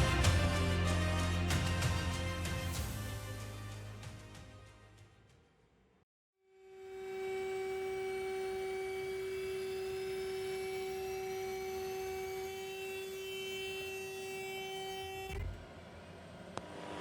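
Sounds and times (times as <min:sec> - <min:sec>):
high turbine whine rising: 0:06.7 - 0:17.0.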